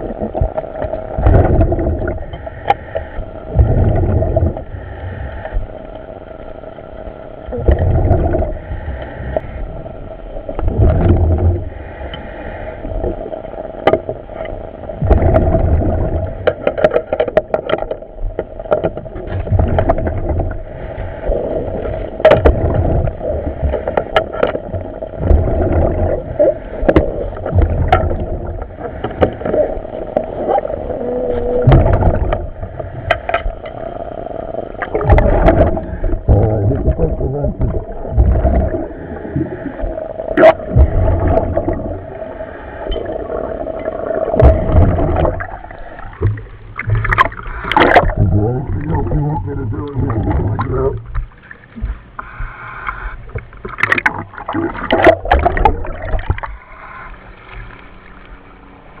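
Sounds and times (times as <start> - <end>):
bubbling exhaust: 25.1 - 29.7, 34.9 - 51.1
steady radio hum: 25.3 - 43.7, 47.3 - 53.4, 56.5 - 58.6.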